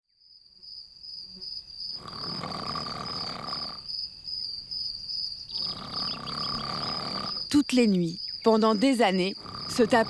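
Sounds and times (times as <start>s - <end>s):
crickets chirping: 0.2s - 10.0s
man snoring heavily: 2.0s - 3.9s, 5.5s - 7.5s, 9.3s - 10.0s.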